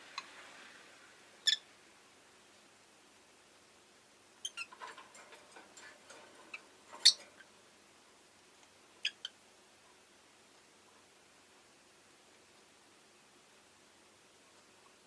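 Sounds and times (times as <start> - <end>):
lovebird chirping: 1.4 - 1.7, 4.4 - 4.8, 7.0 - 7.2, 9.0 - 9.4.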